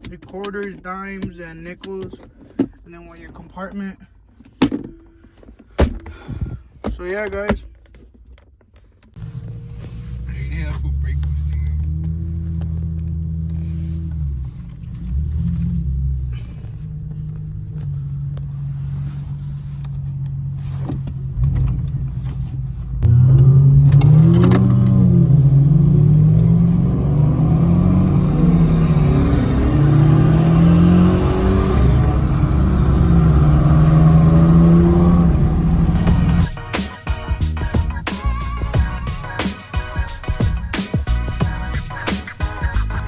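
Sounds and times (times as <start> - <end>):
car engine idling and revving: 8.8 - 43.0.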